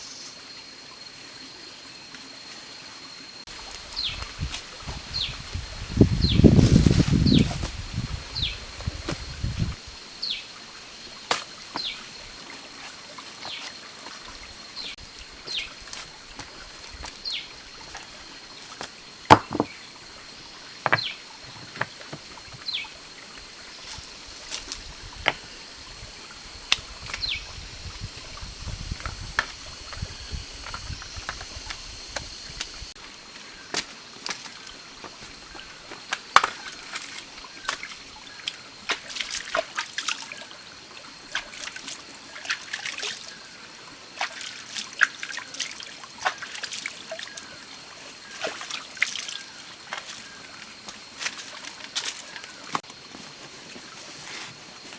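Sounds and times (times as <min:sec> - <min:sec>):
water trickling and dripping: 0:08.8 - 0:19.2, 0:32.6 - 0:53.1
small splashes and clicks: 0:35.5 - 0:40.5, 0:41.3 - 0:43.4, 0:44.2 - 0:47.6, 0:48.2 - 0:53.0.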